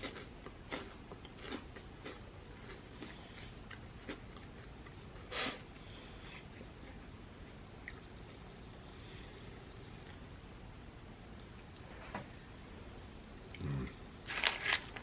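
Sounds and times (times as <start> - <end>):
chewing crispy rice crackers: 0.0 - 8.5, 13.3 - 15.0.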